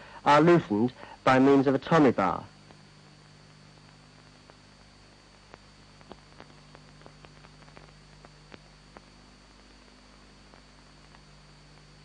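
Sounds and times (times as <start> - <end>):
faint hum and hiss: 0.0 - 12.0
faint sharp clicks: 5.3 - 9.9.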